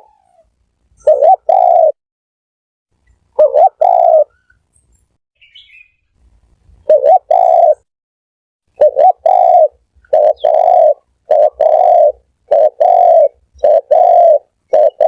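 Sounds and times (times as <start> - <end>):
dove cooing: 0.0 - 2.0, 3.4 - 4.4, 6.8 - 7.9, 8.8 - 15.0.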